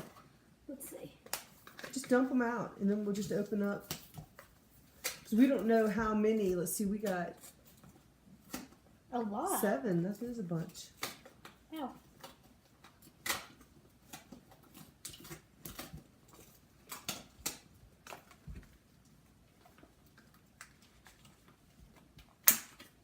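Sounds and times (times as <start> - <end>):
plastic rustling: 1.2 - 8.8, 9.6 - 23.0
sharp plastic snap: 10.9 - 11.6, 13.2 - 14.4, 16.8 - 18.3, 22.4 - 23.0.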